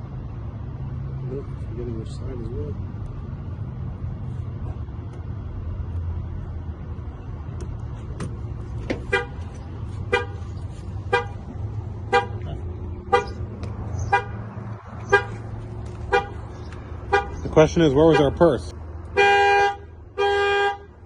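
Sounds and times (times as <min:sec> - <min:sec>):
car horn short honks: 0:09.0 - 0:09.5, 0:10.1 - 0:10.5, 0:11.1 - 0:11.4, 0:12.1 - 0:12.5, 0:13.1 - 0:13.4, 0:14.0 - 0:14.4, 0:15.0 - 0:15.4, 0:16.1 - 0:16.4, 0:17.1 - 0:17.4, 0:19.1 - 0:20.9.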